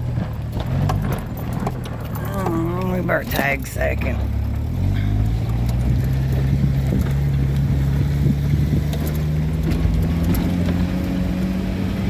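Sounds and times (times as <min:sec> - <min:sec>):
vehicle engine pulling uphill: 0:00.0 - 0:12.0
clicks and rattles: 0:00.4 - 0:04.6.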